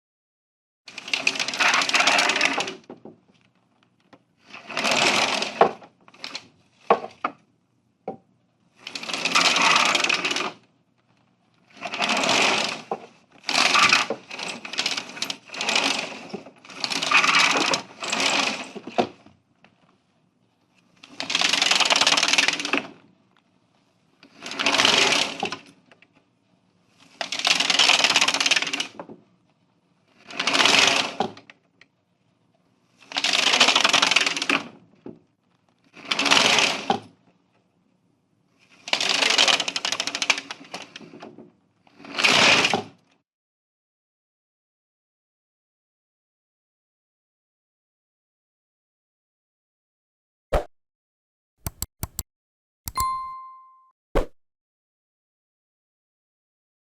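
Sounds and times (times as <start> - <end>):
roller shutter rattling: 0.9 - 2.8, 11.8 - 19.0.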